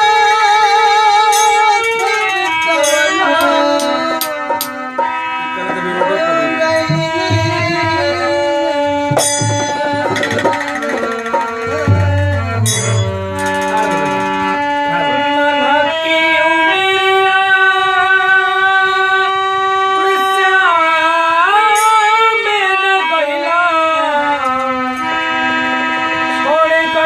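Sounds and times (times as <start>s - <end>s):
melody of long held notes: 0.0s - 27.0s
low drum strokes: 5.6s - 14.6s.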